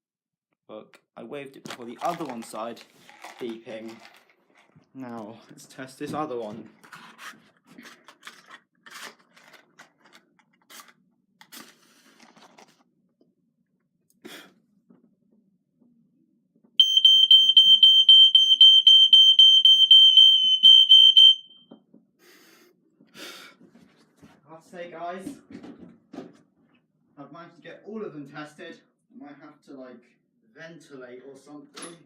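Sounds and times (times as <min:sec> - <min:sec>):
fire alarm piercing tone: 0:16.8 - 0:21.7.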